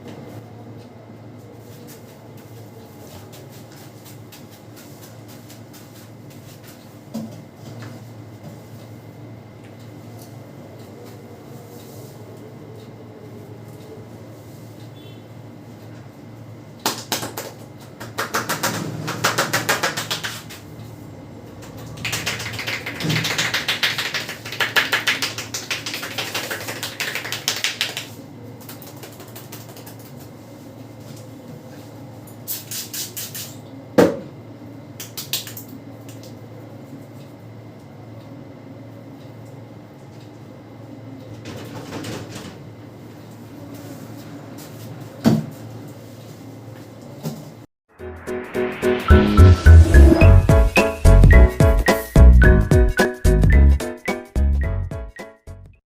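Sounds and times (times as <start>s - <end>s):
fast hand tapping on head: 16.9s - 20.5s, 22.0s - 28.1s.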